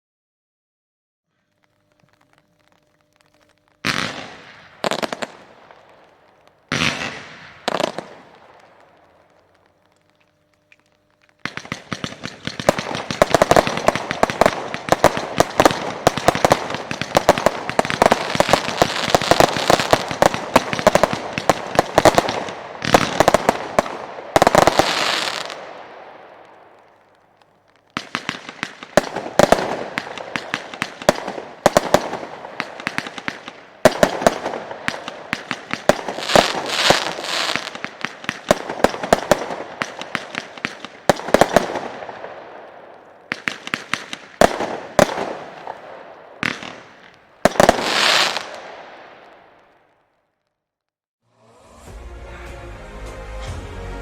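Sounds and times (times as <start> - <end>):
fireworks crackling: 1.3 - 50.4
small shell bursts: 1.7 - 42.3.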